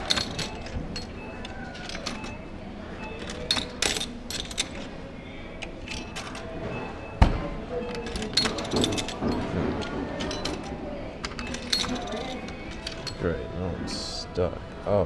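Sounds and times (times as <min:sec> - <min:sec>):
background music: 0:00.0 - 0:15.0
claw machine clicks and clinks: 0:07.8 - 0:13.2.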